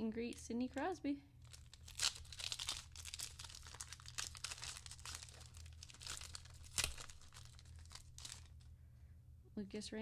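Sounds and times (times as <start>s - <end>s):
wrapper tearing and crinkling: 1.4s - 8.7s.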